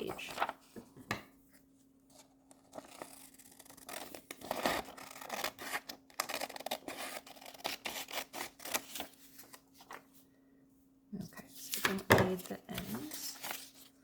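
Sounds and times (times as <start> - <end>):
scissors cutting paper: 2.5 - 9.1.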